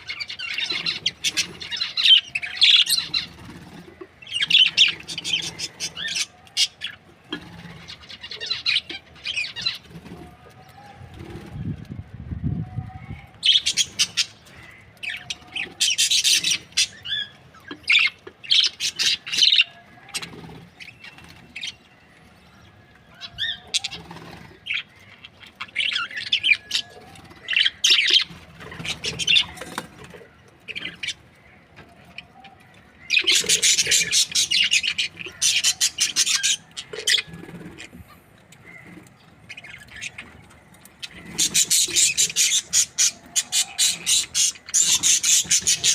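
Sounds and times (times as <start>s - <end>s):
budgerigars chattering: 41.0s - 45.9s.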